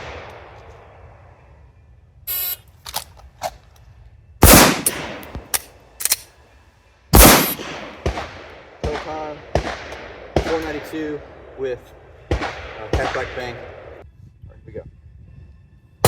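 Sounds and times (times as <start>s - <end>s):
gunshots: 0.0s - 1.0s, 4.4s - 5.6s, 7.2s - 14.0s.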